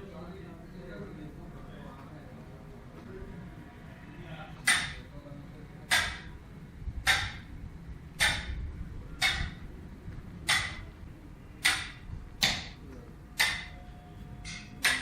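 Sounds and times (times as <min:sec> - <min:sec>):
hammer striking metal: 0:04.6 - 0:05.0, 0:05.9 - 0:06.3, 0:07.0 - 0:07.5, 0:08.2 - 0:08.6, 0:09.2 - 0:09.6, 0:10.5 - 0:10.8, 0:11.6 - 0:12.8, 0:13.4 - 0:13.8, 0:14.4 - 0:15.0.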